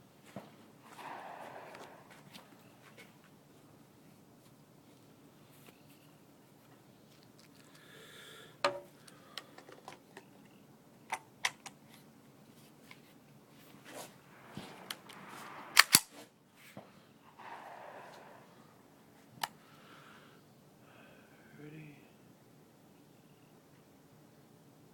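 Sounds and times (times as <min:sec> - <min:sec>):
soft hissing rustle: 0:11.8 - 0:20.4
sharp clicks and snaps: 0:15.8 - 0:16.1.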